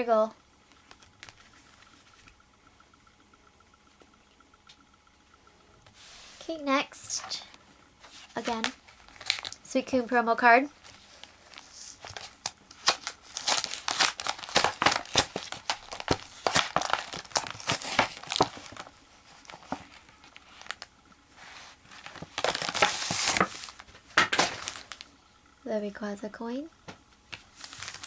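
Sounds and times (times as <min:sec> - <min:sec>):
plastic packaging crinkling and tearing: 0:08.3 - 0:09.7, 0:10.8 - 0:20.9, 0:21.6 - 0:25.2, 0:27.3 - 0:28.0.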